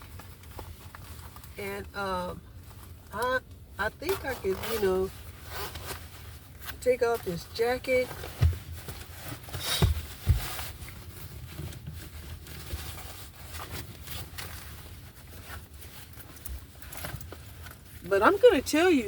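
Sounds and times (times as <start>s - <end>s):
car interior hum with air conditioning: 0.0s - 19.0s
clothing rustling: 3.8s - 19.0s.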